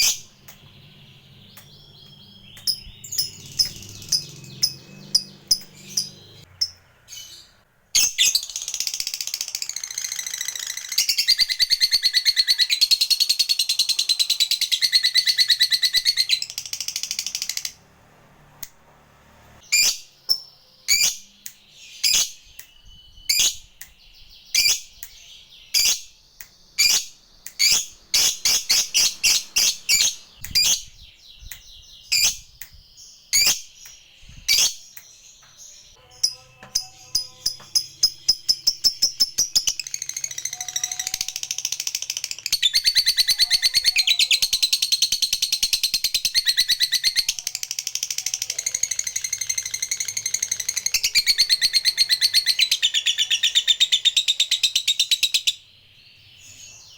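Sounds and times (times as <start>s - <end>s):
lovebird trilling: 0.0s - 7.4s, 36.0s - 55.5s
sharp bird chirps: 0.0s - 17.8s, 19.6s - 56.9s.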